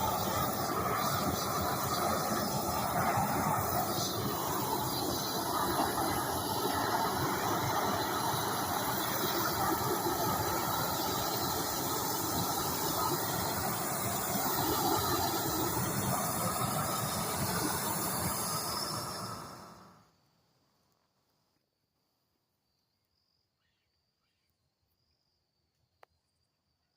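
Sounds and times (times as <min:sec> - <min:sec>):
torch burning with hiss: 0:00.0 - 0:20.0.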